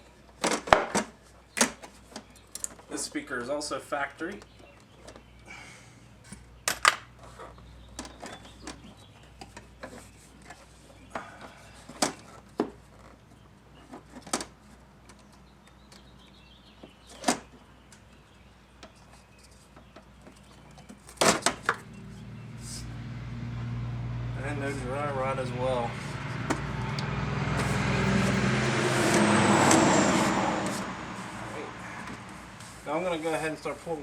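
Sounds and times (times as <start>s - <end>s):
loud plastic clacks: 0.3s - 2.9s, 18.8s - 21.8s.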